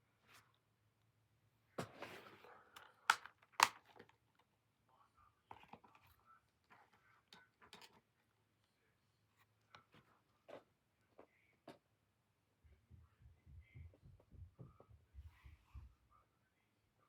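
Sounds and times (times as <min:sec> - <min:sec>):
plastic case snapping open: 0:02.8 - 0:04.1
plastic rustling and clicks: 0:02.8 - 0:04.2.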